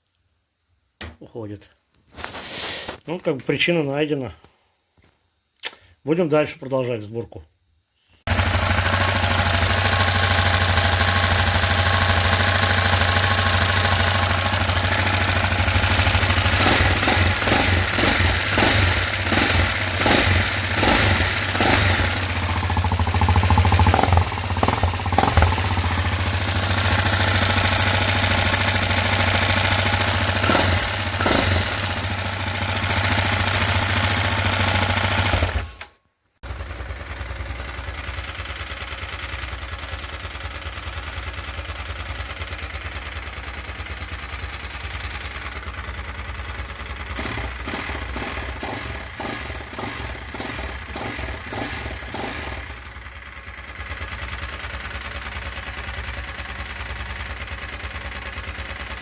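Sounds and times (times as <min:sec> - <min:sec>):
fine even engine ticking: 0:08.3 - 0:35.8, 0:41.6 - 0:59.0
motorcycle engine running: 0:08.3 - 0:35.8, 0:36.4 - 0:59.0.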